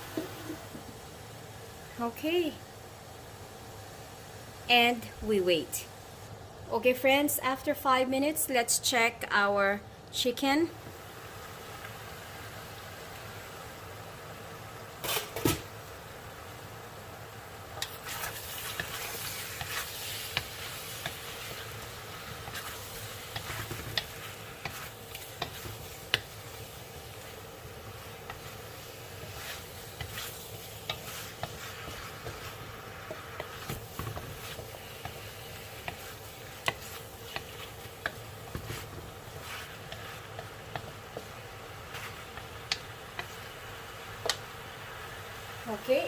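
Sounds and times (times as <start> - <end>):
chicken sizzling in a pan: 0.0 - 6.4, 10.2 - 46.0
utensil tapping a pan: 23.3 - 26.6, 29.2 - 41.4.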